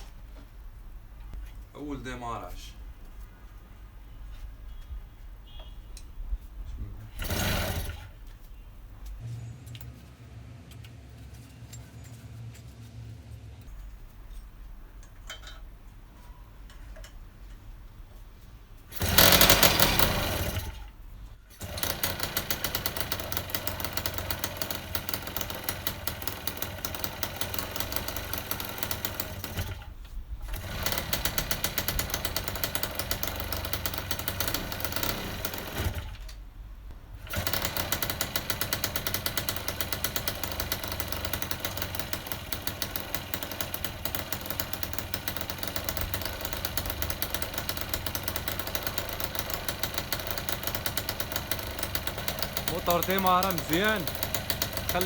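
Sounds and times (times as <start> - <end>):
two-stroke moped engine running: 7.1 - 8.1, 18.9 - 20.9, 21.6 - 36.2, 37.2 - 55.0.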